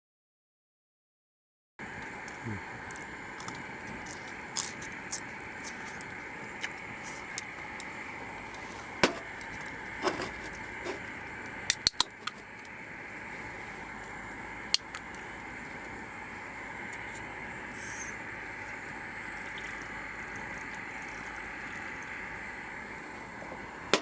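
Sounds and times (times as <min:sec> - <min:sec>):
steady background hiss: 0:01.8 - 0:24.0.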